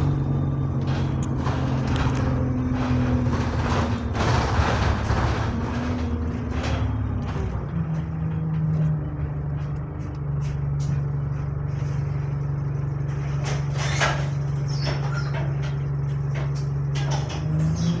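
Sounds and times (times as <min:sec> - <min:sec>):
short rattles: 0:00.0 - 0:12.4
bus engine droning: 0:00.0 - 0:18.0.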